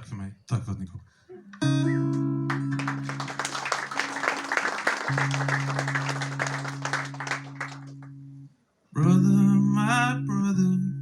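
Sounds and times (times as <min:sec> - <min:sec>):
audience applauding: 0:02.5 - 0:08.1.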